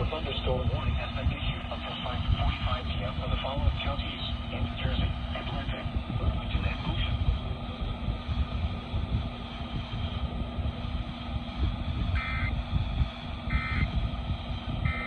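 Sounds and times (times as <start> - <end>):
steady low rumble: 0.0 - 15.0
alert data tone bursts: 12.2 - 12.6, 13.5 - 13.9.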